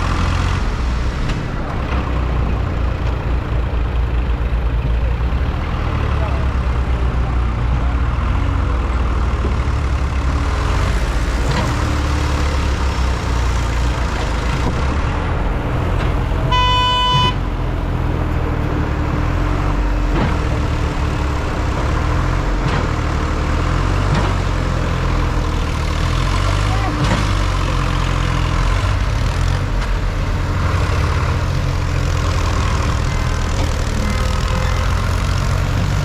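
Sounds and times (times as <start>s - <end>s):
heavy vehicle engine running: 0.0s - 36.0s
short horn toot: 16.5s - 17.4s.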